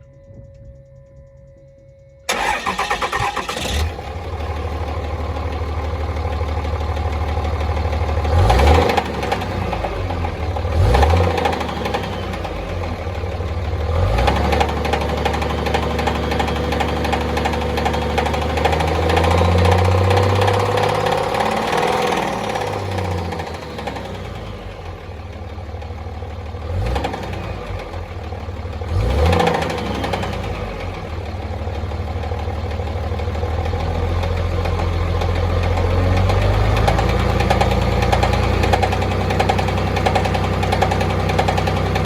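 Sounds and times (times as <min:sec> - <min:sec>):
diesel engine cranking and revving: 0:02.3 - 0:42.0
engine knocking: 0:02.3 - 0:42.0.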